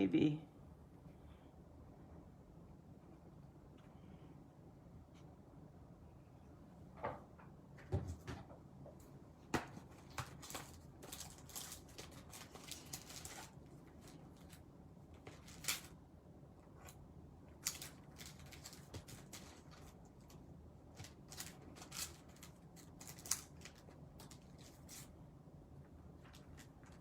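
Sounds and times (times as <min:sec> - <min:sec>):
packets rustling: 0:10.0 - 0:14.6.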